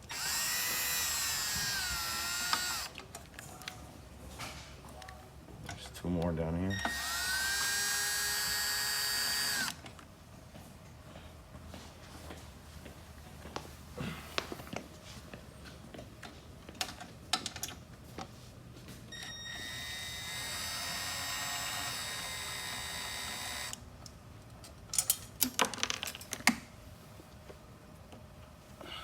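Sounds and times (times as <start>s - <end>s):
power driver whining: 0.0s - 3.0s, 6.7s - 9.8s, 19.2s - 23.8s.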